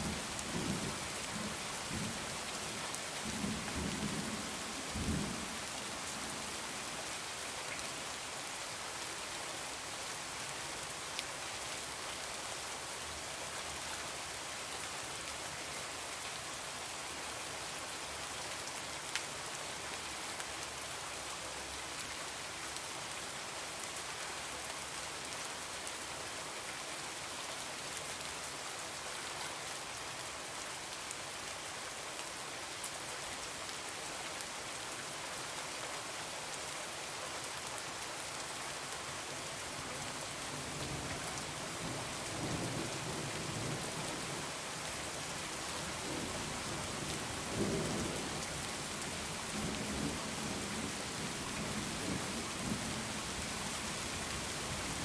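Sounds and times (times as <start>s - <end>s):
heavy rain pouring: 0.0s - 12.4s, 37.0s - 55.0s.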